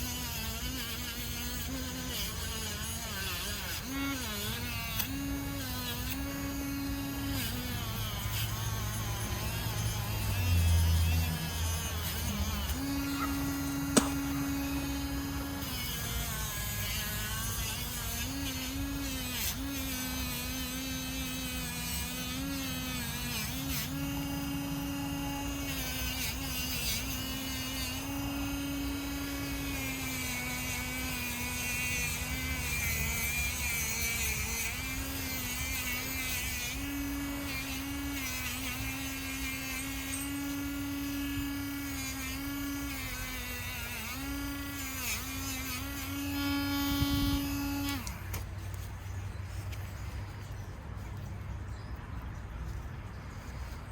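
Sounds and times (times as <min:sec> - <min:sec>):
electric power tool polishing: 0:00.0 - 0:49.1
sharp click: 0:13.9 - 0:14.7.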